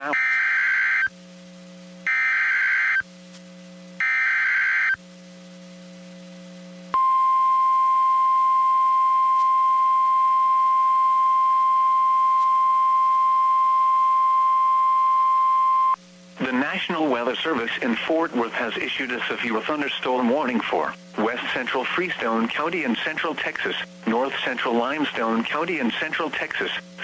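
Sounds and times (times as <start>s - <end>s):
digital data tone bursts: 2.1s - 3.0s.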